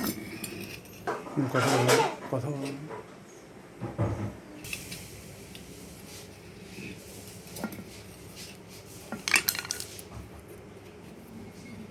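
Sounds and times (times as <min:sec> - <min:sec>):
metal tools clinking and tapping: 0:09.2 - 0:10.0.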